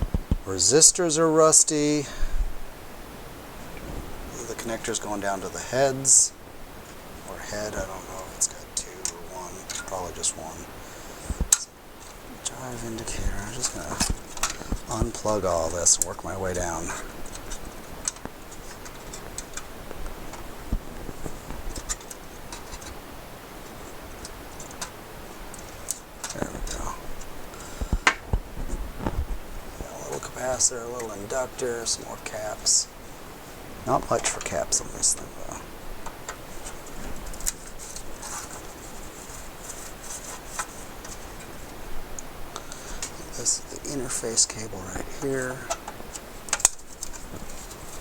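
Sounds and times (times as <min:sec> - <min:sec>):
small parts clicking and scraping: 0:11.4 - 0:23.0, 0:36.0 - 0:43.5.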